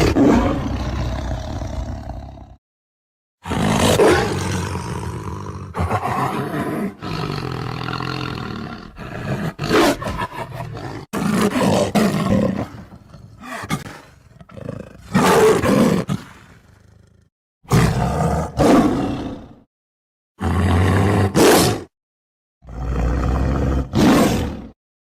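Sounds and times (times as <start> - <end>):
tiger roaring: 0.0 - 2.6, 3.4 - 19.6, 20.4 - 21.9, 22.6 - 24.8.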